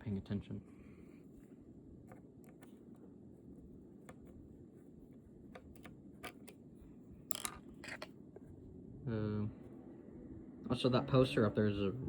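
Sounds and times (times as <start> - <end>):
faint low hum: 0.0 - 12.0
small screws clicking: 7.3 - 8.1.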